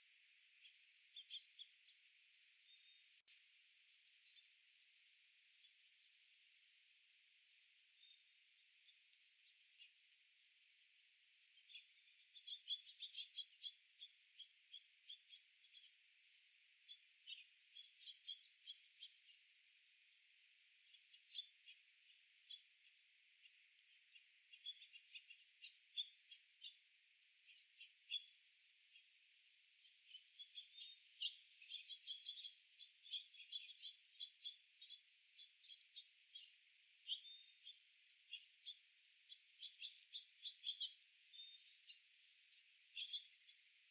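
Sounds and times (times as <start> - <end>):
small songbirds chirping: 0.0 - 43.9.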